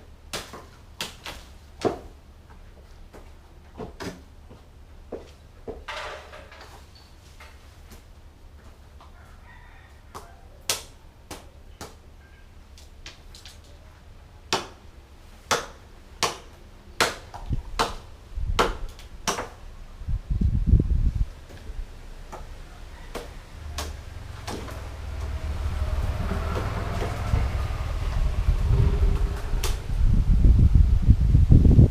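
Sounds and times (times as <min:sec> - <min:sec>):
knocks and cracks of tree-cutting: 0:00.3 - 0:02.2, 0:03.8 - 0:04.3, 0:14.5 - 0:19.6, 0:23.1 - 0:27.6
heavy low rumble: 0:23.5 - 0:31.9.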